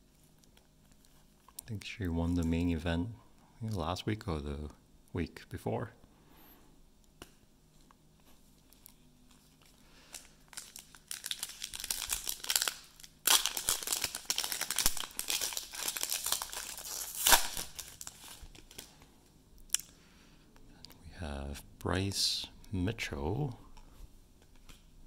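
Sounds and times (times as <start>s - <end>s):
wrapper tearing and crinkling: 9.3s - 19.0s.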